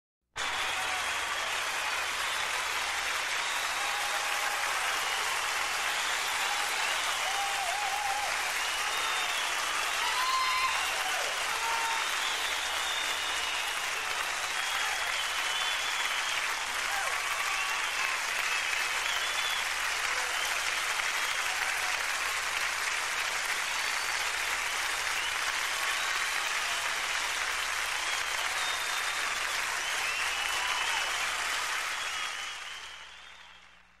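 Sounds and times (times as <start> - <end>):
whistles from audience: 0.4 - 22.2, 23.2 - 34.0
audience applauding: 0.4 - 34.0.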